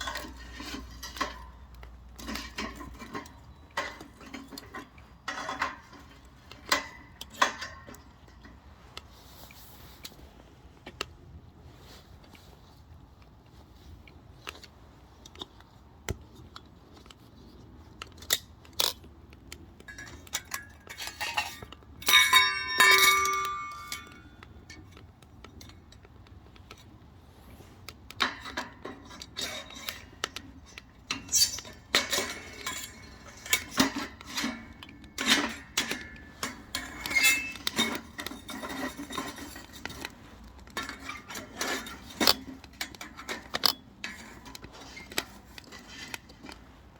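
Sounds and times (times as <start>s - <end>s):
metal clinks and clanks: 0.0s - 9.2s, 19.8s - 25.7s, 28.2s - 46.8s.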